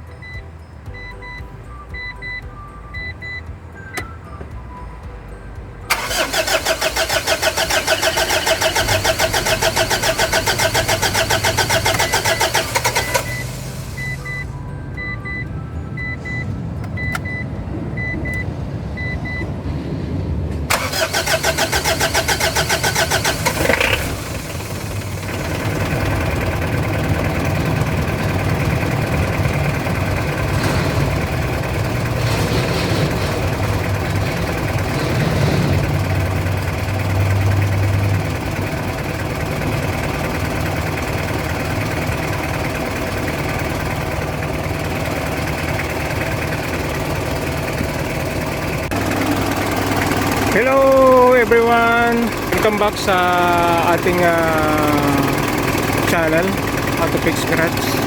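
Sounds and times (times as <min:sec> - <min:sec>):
diesel engine cranking: 0:00.0 - 0:58.0
diesel engine idling: 0:00.0 - 0:58.0
short beeps: 0:00.1 - 0:04.9, 0:13.0 - 0:19.5.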